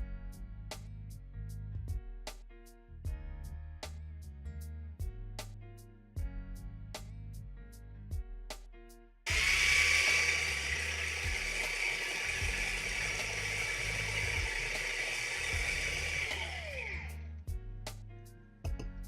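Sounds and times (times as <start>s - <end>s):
electric drill whining: 9.3s - 17.2s.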